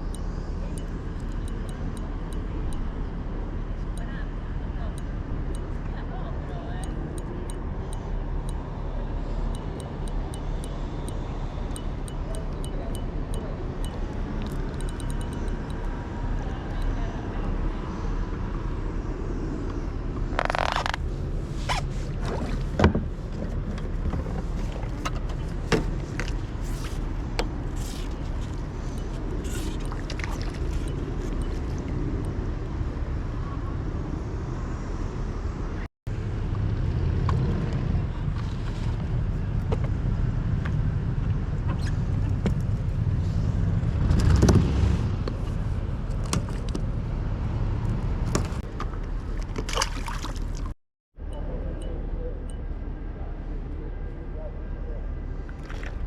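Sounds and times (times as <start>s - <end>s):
low outdoor rumble: 0.0s - 56.0s.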